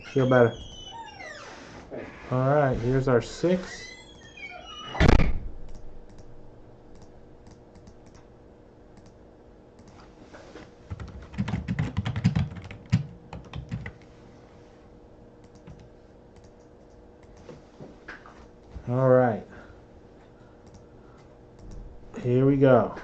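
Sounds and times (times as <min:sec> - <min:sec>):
typing on computer keyboard: 0:10.9 - 0:14.0.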